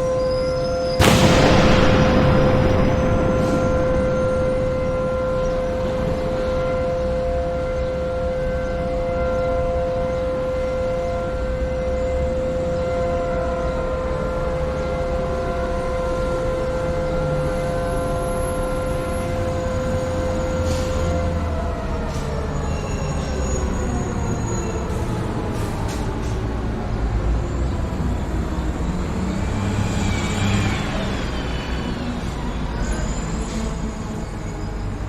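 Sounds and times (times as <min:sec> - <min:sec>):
low rumbling background noise: 0:01.0 - 0:08.8
warning siren steady tone: 0:04.3 - 0:25.8.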